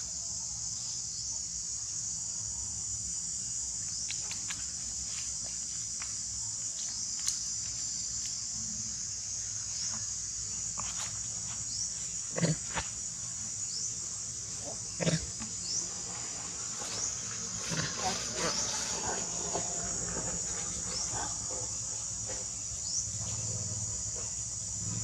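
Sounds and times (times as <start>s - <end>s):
insect chorus: 0.0s - 25.0s
faint clicks and chirps: 3.8s - 4.7s, 6.8s - 8.4s
animal calls: 14.6s - 25.0s.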